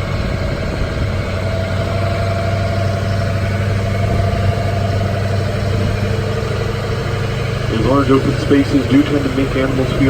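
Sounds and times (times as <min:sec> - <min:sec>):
faint steady whine: 0:00.0 - 0:10.0
tram engine humming: 0:00.0 - 0:10.0.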